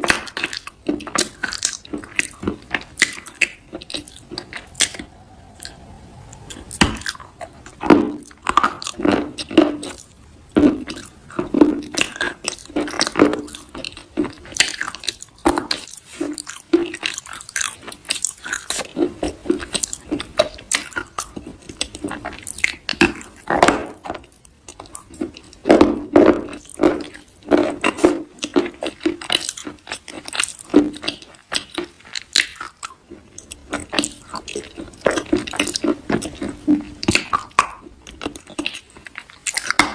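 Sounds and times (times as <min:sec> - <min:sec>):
soft crisp crunching: 0:00.0 - 0:23.4.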